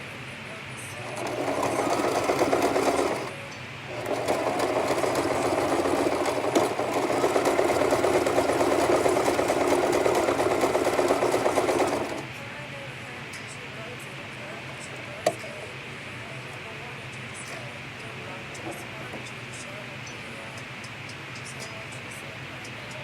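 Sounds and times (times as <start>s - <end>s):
sewing machine stitching: 1.0s - 12.3s.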